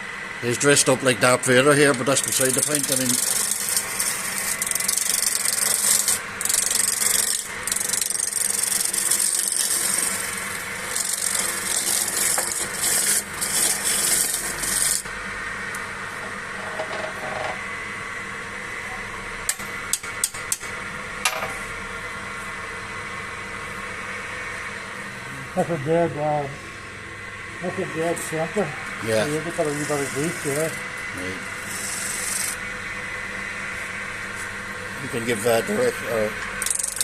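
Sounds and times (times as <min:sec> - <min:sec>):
wood lathe running: 0:00.6 - 0:15.1, 0:27.9 - 0:32.7, 0:35.0 - 0:37.0
tool rasping on spinning log: 0:00.8 - 0:15.1, 0:29.0 - 0:32.7, 0:35.1 - 0:37.0.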